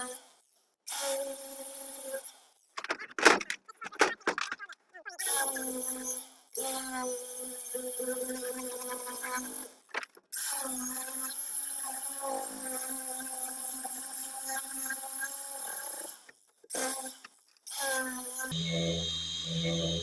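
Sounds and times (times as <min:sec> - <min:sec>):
angle grinder grinding wood: 0:18.5 - 0:20.0.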